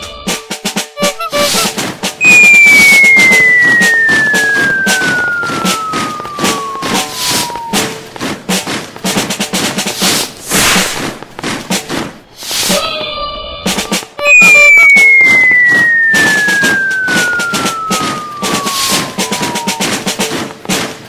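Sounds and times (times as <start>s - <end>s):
drum roll and drum beats: 0.0s - 12.8s, 13.6s - 21.0s
whistle sliding down in pitch: 1.0s - 8.0s, 14.2s - 20.1s.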